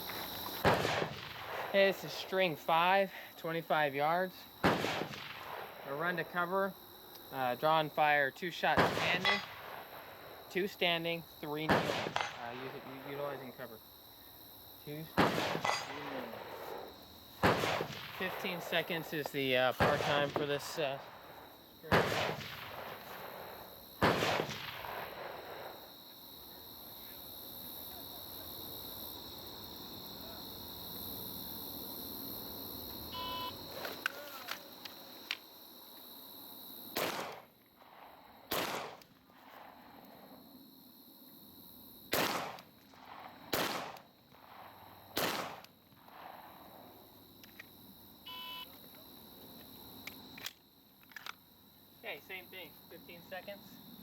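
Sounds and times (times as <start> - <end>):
pistol shots with echo: 0.1 - 1.8, 4.6 - 5.8, 8.8 - 10.2, 11.6 - 12.9, 15.1 - 19.0, 19.8 - 25.7, 37.0 - 39.0, 42.1 - 46.2
handgun shots echoing: 15.2 - 16.2, 37.0 - 37.4, 38.5 - 39.0, 42.1 - 42.6, 43.5 - 44.0, 45.2 - 45.7.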